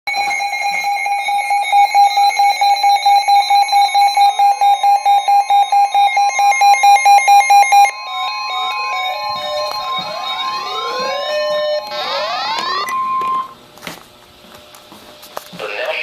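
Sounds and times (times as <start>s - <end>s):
emergency alert beeping: 0.1s - 13.6s
electronic tone with rising sweeps: 8.5s - 13.6s.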